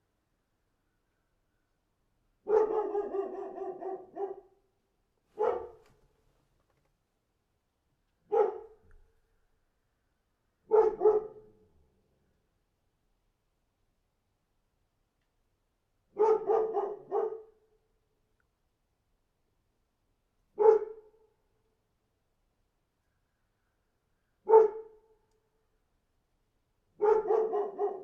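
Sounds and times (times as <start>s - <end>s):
dog barking: 2.4s - 4.6s, 5.4s - 5.9s, 8.3s - 8.8s, 10.6s - 11.6s, 16.2s - 17.6s, 20.6s - 21.2s, 24.4s - 25.0s, 27.0s - 28.0s.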